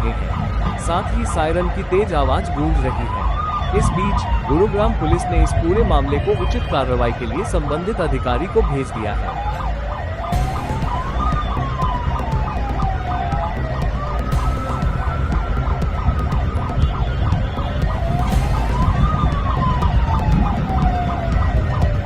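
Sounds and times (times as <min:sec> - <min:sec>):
high held siren tone: 0:00.0 - 0:22.0
rapid pulsing siren: 0:00.0 - 0:22.0
wailing siren: 0:00.0 - 0:22.0
heavy low rumble: 0:10.4 - 0:22.0.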